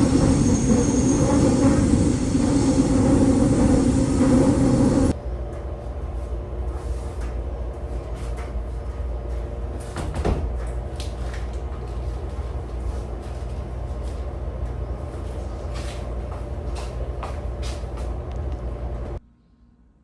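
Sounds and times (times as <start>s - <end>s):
sweeping squeal: 0.0s - 5.1s.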